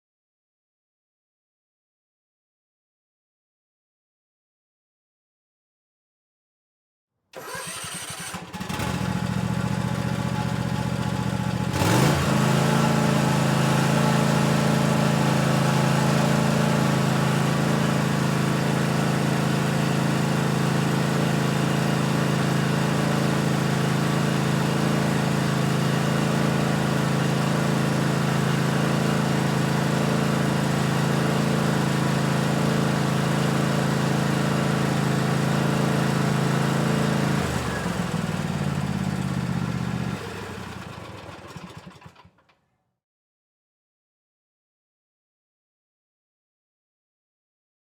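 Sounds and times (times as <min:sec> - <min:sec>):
lawn mower engine starting: 0:07.4 - 0:42.6.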